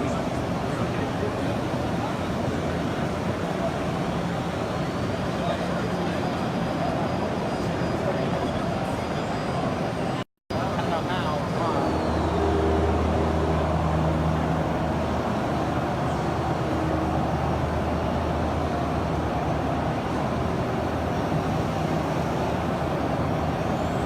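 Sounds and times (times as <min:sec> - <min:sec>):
low machinery hum: 0:10.5 - 0:24.0.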